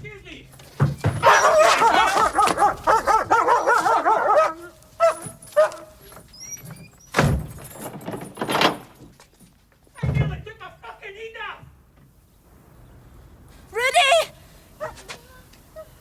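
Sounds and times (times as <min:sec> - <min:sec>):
dog yelping: 0:01.1 - 0:07.1, 0:14.8 - 0:16.0
dog barking and snarling: 0:01.2 - 0:06.0, 0:14.8 - 0:15.1.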